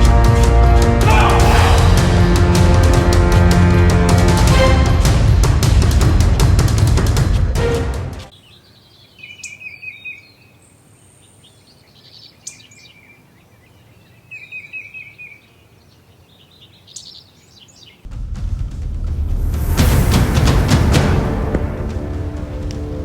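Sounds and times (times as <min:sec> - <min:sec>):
background music: 0:00.0 - 0:08.3, 0:18.1 - 0:23.0
songbird trilling: 0:08.3 - 0:18.0.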